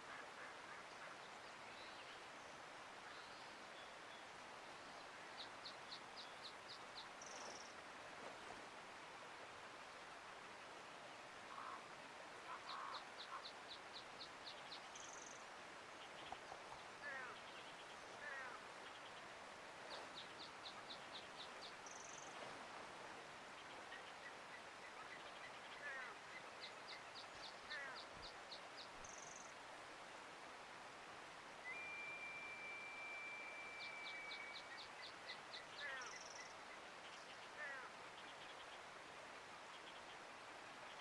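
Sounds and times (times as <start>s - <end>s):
running water: 0.0s - 41.0s
songbirds calling: 11.2s - 22.4s, 23.4s - 29.6s, 31.5s - 41.0s.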